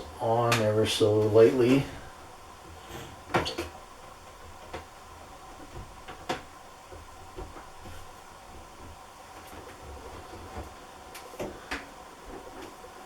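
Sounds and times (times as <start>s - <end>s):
water taps clicking and knocking: 3.2s - 9.0s.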